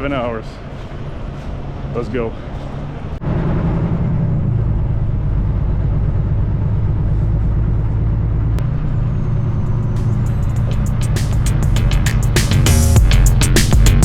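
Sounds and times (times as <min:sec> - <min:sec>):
truck diesel engine droning: 0:03.2 - 0:13.6.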